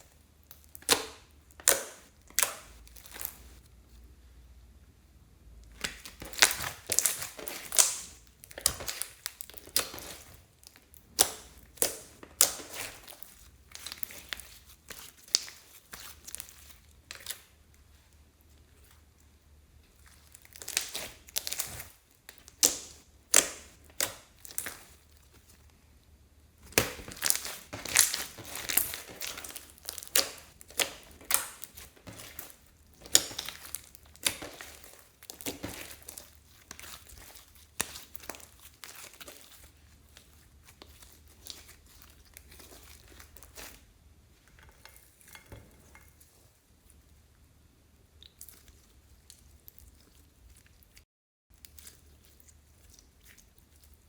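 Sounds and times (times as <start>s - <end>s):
slime crackling pops: 5.8s - 10.3s, 20.5s - 25.0s, 26.6s - 39.4s.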